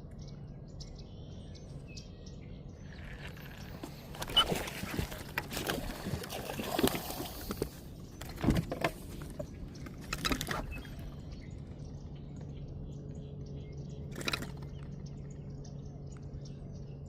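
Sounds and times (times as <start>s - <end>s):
knocks and clatter of gear: 2.9s - 11.5s, 13.9s - 15.4s.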